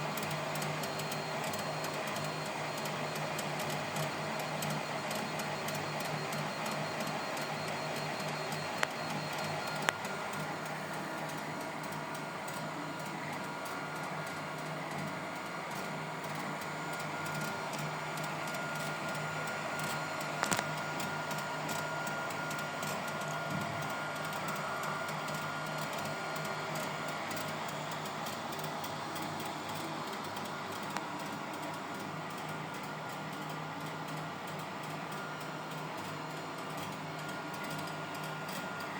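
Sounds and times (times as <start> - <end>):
printer motors whirring: 0.0 - 38.9.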